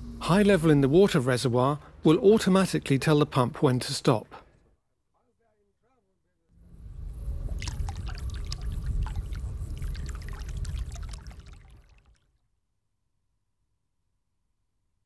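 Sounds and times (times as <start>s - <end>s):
water pouring and splashing: 7.4s - 12.3s.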